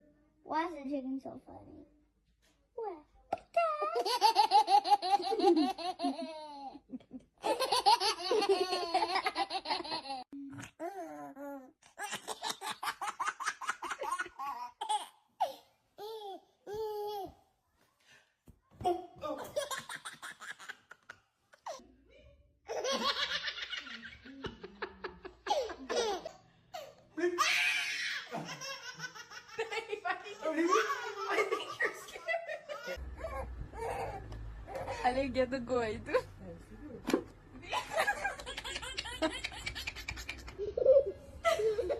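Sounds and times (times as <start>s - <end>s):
baby laughing: 3.9s - 6.8s, 7.4s - 10.2s, 25.5s - 35.0s, 38.2s - 41.9s
baby giggling: 25.5s - 29.7s, 38.2s - 41.9s.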